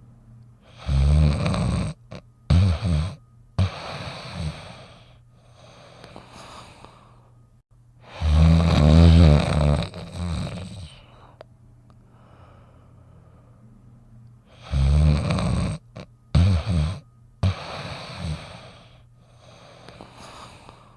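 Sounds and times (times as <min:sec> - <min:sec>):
dog snoring: 0:00.6 - 0:07.1, 0:08.0 - 0:11.4, 0:14.5 - 0:20.9
dog snorting: 0:00.7 - 0:06.9, 0:08.1 - 0:11.1, 0:14.5 - 0:20.9.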